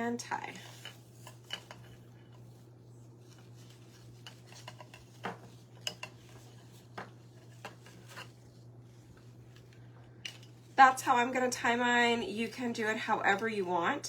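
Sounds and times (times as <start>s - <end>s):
steady low hum: 0.0s - 14.0s
ribbon rustling: 0.5s - 11.2s.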